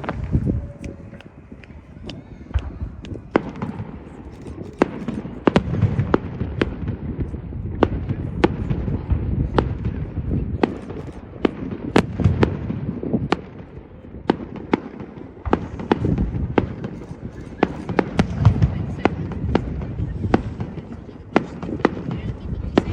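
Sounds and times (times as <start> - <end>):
fireworks bangs and cracks: 0.0 - 22.9.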